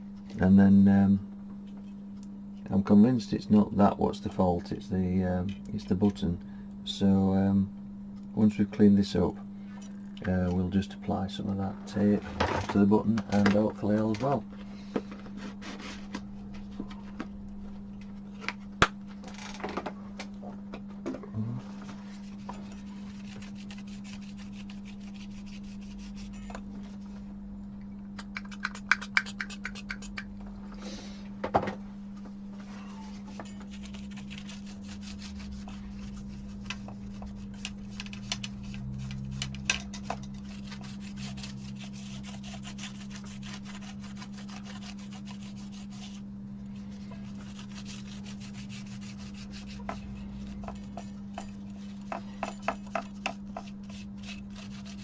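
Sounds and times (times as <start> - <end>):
steady low hum: 0.0 - 55.0
wipe scratching circuit board: 22.1 - 26.5, 33.0 - 46.2, 46.8 - 55.0.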